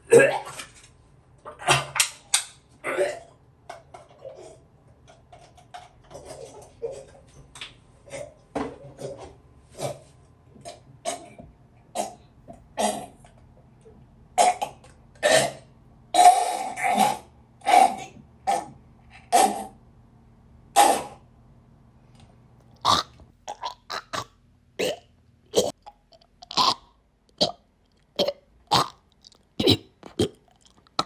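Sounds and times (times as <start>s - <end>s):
person coughing: 2.8s - 3.3s, 29.6s - 30.4s.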